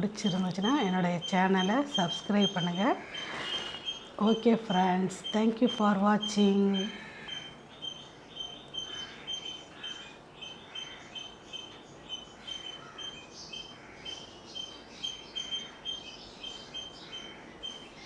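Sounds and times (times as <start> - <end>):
bird chirping: 0.0 - 18.0.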